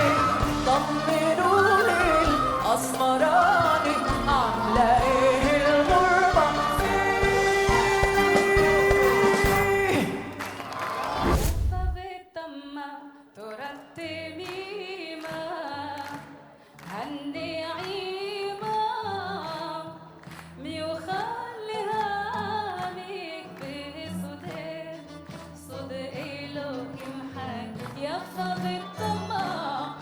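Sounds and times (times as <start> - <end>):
person singing ornamented melody: 0.0 - 10.4.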